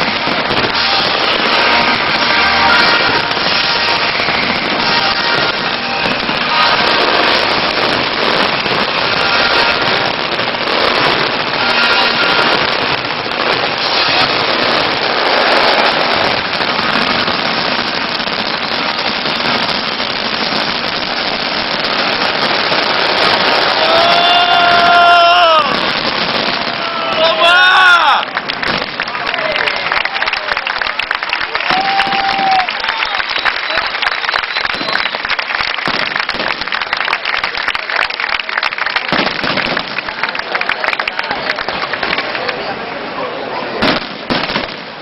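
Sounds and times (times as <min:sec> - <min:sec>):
fireworks bursting and crackling: 0:00.0 - 0:45.0.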